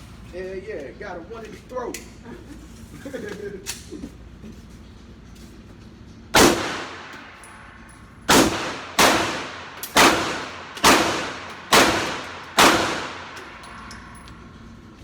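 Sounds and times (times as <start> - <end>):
pistol shots echoing: 6.4 - 7.5, 8.3 - 14.1.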